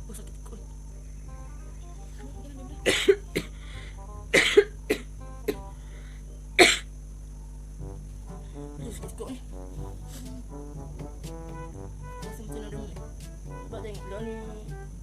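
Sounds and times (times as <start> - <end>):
person coughing: 2.8 - 3.5, 4.4 - 5.6, 6.6 - 6.9.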